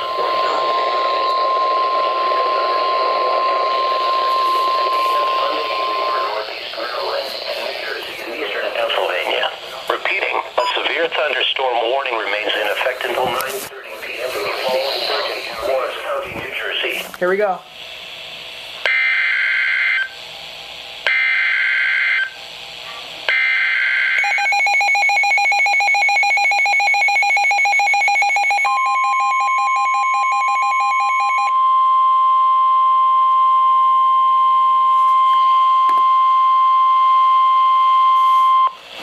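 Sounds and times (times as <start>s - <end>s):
rapidly pulsing alert beep: 0.0s - 7.8s
warbling data screech: 0.0s - 9.2s, 14.4s - 16.0s
steady warning alarm tone: 0.0s - 17.1s, 18.1s - 20.2s, 21.0s - 22.4s, 23.3s - 38.9s.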